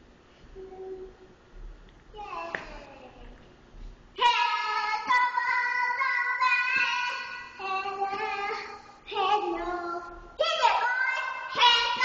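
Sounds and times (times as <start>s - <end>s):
child singing high held notes: 0.5s - 1.2s.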